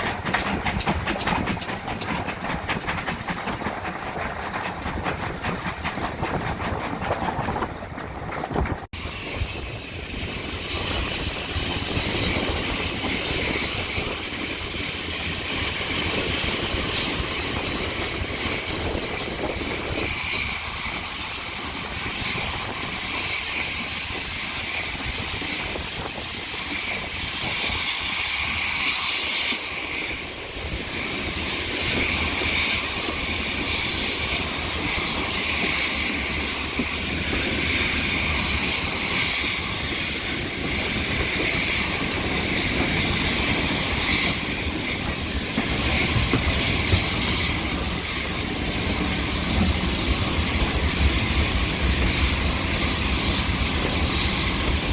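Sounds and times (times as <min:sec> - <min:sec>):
locomotive low rumble: 0:00.0 - 0:11.0, 0:31.9 - 0:54.9
steam hissing: 0:00.0 - 0:54.9.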